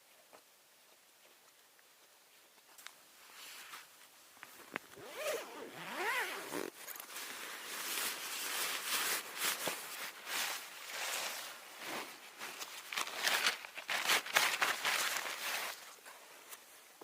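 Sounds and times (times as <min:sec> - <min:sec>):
zipper being pulled: 0:04.9 - 0:07.1.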